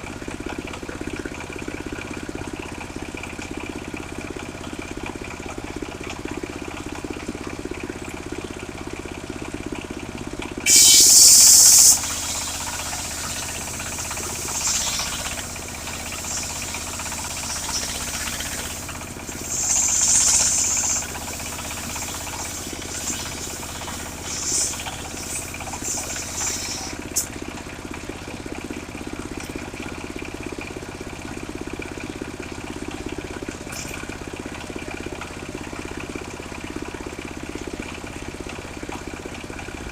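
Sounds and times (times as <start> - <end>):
sawmill engine running: 0.0 - 39.9
saw blade cutting log: 10.7 - 27.4.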